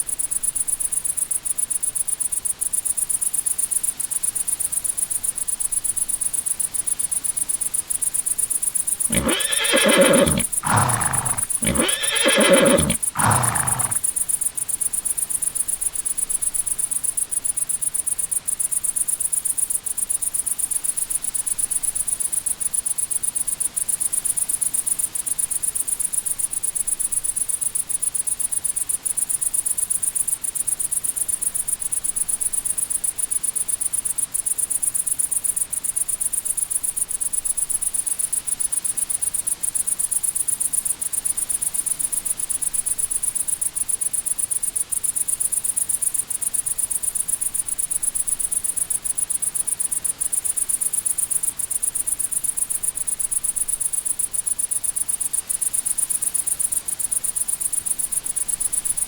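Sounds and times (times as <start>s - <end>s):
crickets chirping: 9.1s - 14.0s
horse whinnying: 9.1s - 14.0s.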